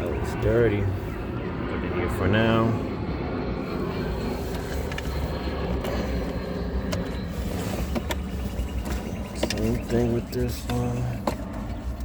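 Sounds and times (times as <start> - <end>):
steady low rumble: 0.0 - 12.0.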